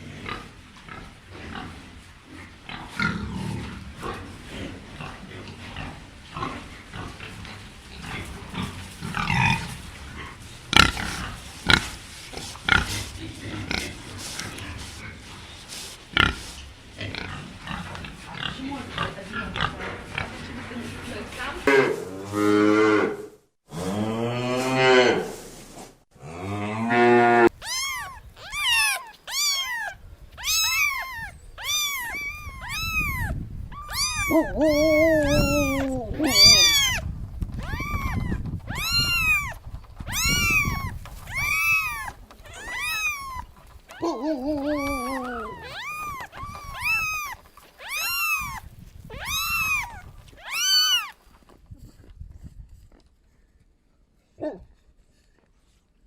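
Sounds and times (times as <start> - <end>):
kitten mewing: 27.4 - 51.2
lower longer meow: 27.6 - 37.0, 37.6 - 43.4, 44.0 - 51.1
cow mooing: 30.5 - 37.0, 44.0 - 47.3.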